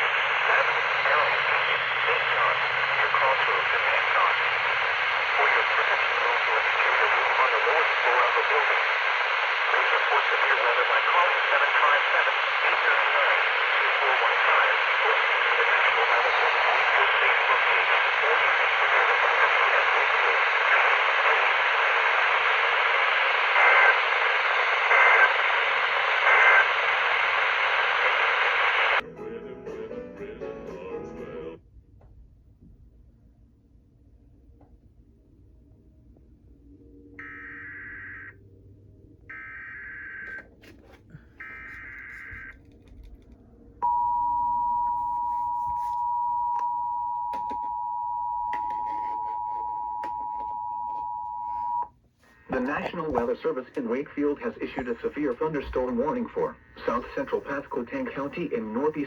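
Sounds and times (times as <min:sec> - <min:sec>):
radio static hiss: 0:00.0 - 0:29.0, 0:40.3 - 0:42.6, 0:51.6 - 0:59.0
loud steady two-tone beep: 0:43.8 - 0:51.9.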